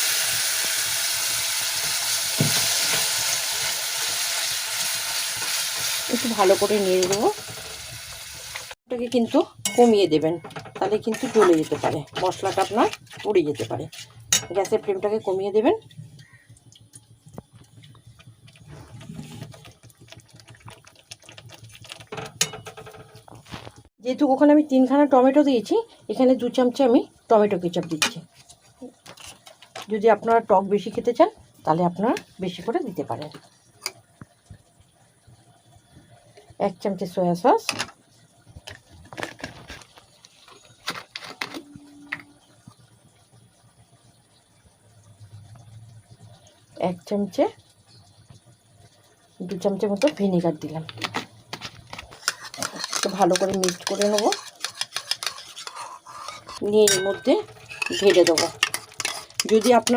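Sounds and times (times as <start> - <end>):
paste cooking in a frying pan: 0.0 - 59.9
spatula scraping a pan: 10.5 - 15.2, 18.7 - 19.7, 50.9 - 59.9.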